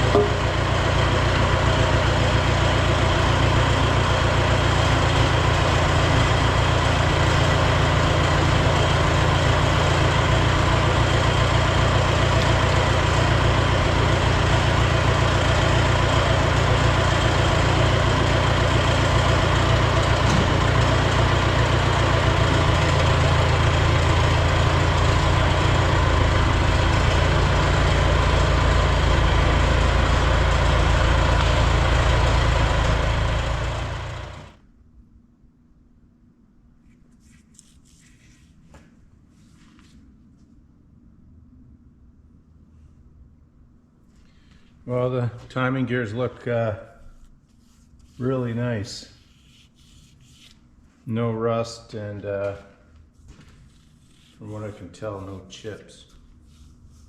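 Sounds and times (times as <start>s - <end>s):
low mechanical drone: 0.0s - 34.6s.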